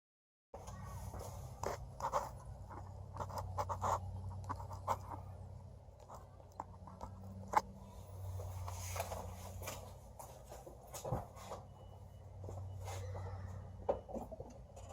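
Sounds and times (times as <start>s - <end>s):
sharp clicks and scraping: 1.6s - 5.4s.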